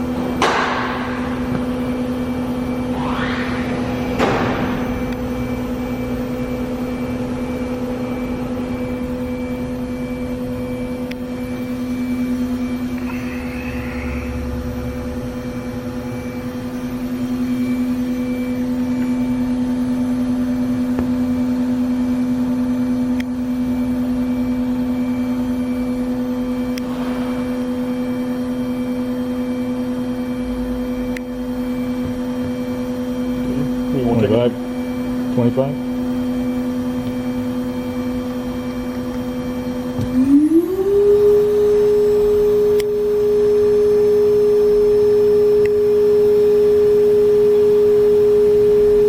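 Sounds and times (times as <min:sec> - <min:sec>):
machine spindle whine: 0:00.0 - 0:49.0.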